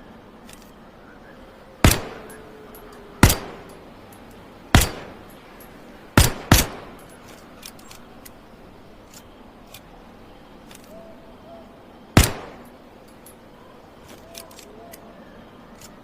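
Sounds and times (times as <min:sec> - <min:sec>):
lighter gun snapping: 0:01.8 - 0:05.4, 0:06.2 - 0:08.4, 0:12.2 - 0:13.2.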